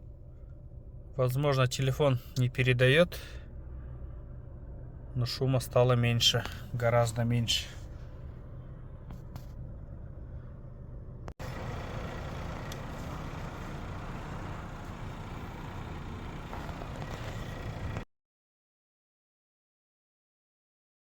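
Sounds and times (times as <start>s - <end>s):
car engine running: 6.2s - 18.0s.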